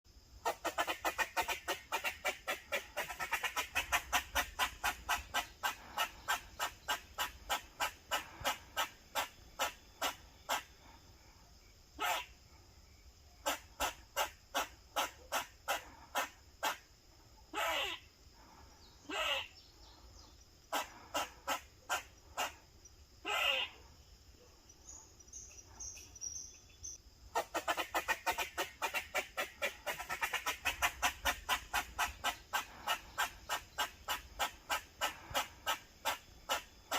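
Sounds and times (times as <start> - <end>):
squirrel barking: 0.4 - 11.0, 12.0 - 12.3, 13.4 - 16.8, 17.5 - 18.0, 19.0 - 19.5, 20.7 - 22.6, 23.2 - 24.6, 27.3 - 36.9.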